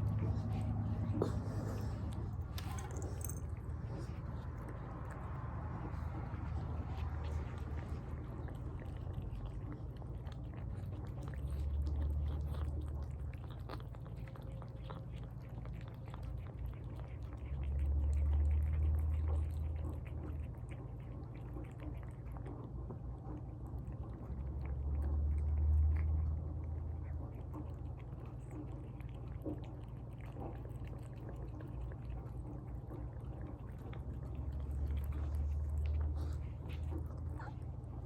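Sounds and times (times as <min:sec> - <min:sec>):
low rumble: 0:00.0 - 0:10.7
cat chewing and lip-smacking: 0:00.0 - 0:38.0.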